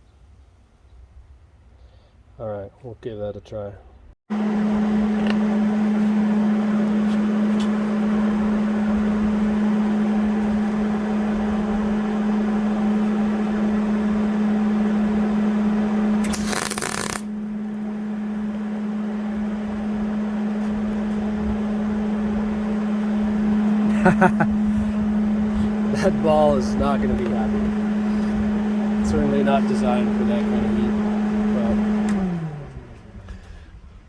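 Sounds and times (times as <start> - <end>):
constant hum: 4.4 - 34.0
welder arc crackling: 16.2 - 17.4.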